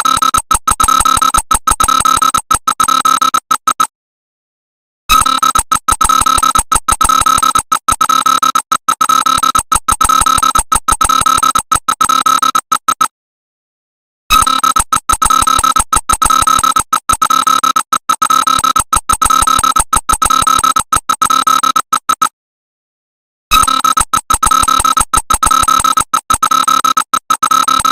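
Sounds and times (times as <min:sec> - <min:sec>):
pulsing electronic alarm tone: 0:00.0 - 0:03.9, 0:05.1 - 0:13.1, 0:14.3 - 0:22.3, 0:23.5 - 0:27.9.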